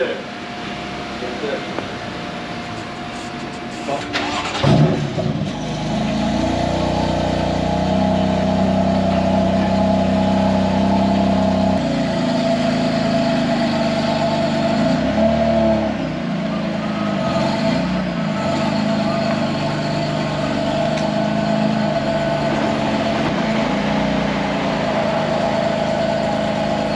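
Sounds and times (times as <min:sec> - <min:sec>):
car engine idling and moving: 0:00.0 - 0:26.9.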